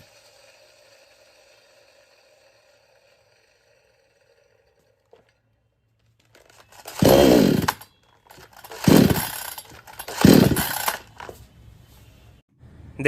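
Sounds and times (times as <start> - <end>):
chainsaw engine revving: 0.0 - 4.9, 6.5 - 11.2.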